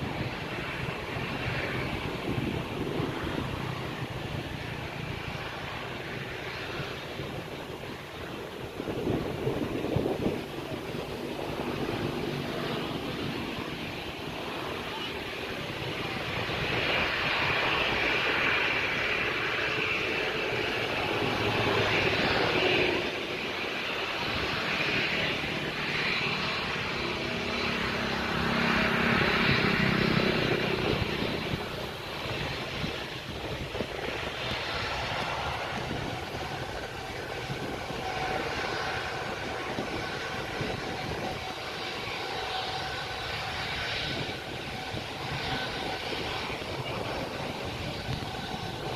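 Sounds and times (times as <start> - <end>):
airliner engines at takeoff: 0.0 - 48.9.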